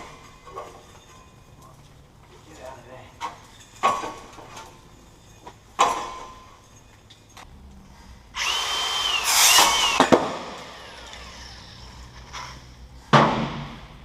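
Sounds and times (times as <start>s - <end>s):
power tool whining on metal: 8.4s - 11.9s.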